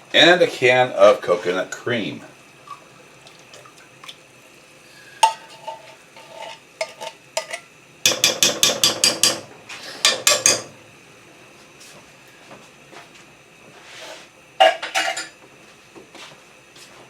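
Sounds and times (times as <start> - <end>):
spoon clinking and scraping cookware: 5.2 - 7.7, 14.6 - 15.3.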